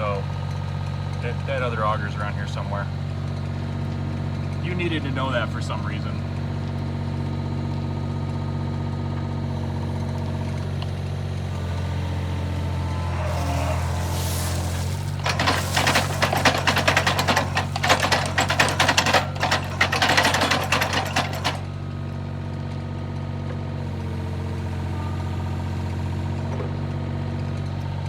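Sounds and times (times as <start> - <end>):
diesel engine running: 0.0 - 28.0
rapid metallic clatter: 13.0 - 21.7.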